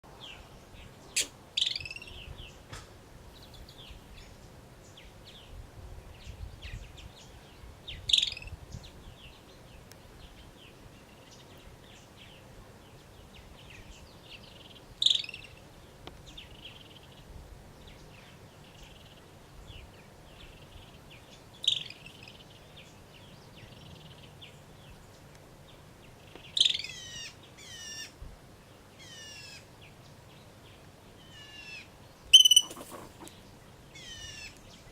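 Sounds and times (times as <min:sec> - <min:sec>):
ground squirrels chirping: 0:01.1 - 0:02.2, 0:21.6 - 0:22.4, 0:26.4 - 0:28.1, 0:29.0 - 0:29.7, 0:31.2 - 0:34.6.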